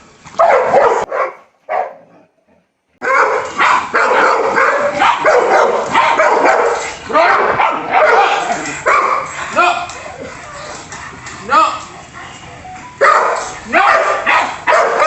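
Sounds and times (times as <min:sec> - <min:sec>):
dogs barking and yelping: 0:00.3 - 0:15.0
dogs scuffling: 0:03.2 - 0:12.3.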